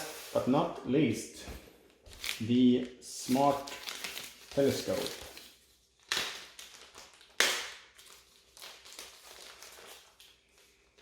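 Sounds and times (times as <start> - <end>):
packaging rustling and scraping: 1.8 - 7.3.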